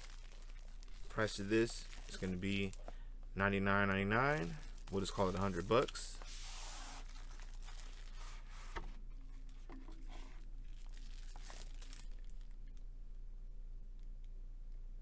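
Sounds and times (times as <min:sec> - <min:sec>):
packaging tearing and crinkling: 0:00.0 - 0:02.8, 0:04.3 - 0:08.6, 0:10.7 - 0:12.6.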